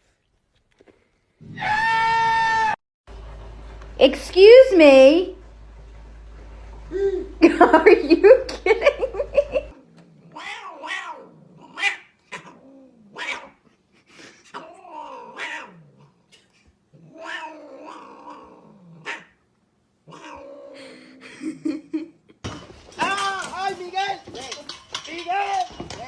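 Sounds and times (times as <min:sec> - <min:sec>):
cat yowling: 0:01.5 - 0:02.8, 0:10.2 - 0:13.6, 0:14.6 - 0:15.9, 0:17.0 - 0:18.5, 0:20.1 - 0:20.8.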